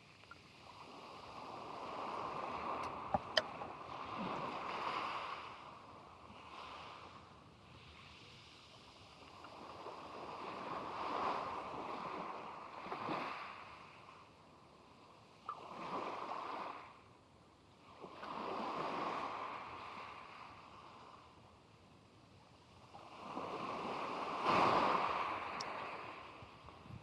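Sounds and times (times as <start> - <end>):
sea waves washing onto beach: 0.0 - 14.2, 22.8 - 27.0.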